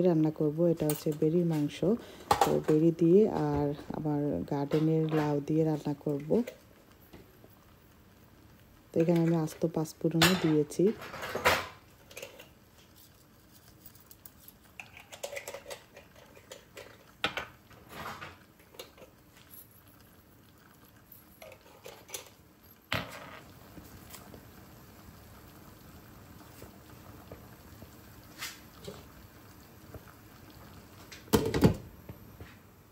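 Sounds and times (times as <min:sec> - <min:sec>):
faint steady hiss: 0:00.0 - 0:32.9
utensils clattering against pots: 0:00.7 - 0:06.6, 0:09.0 - 0:12.6, 0:14.6 - 0:19.2, 0:21.3 - 0:22.4.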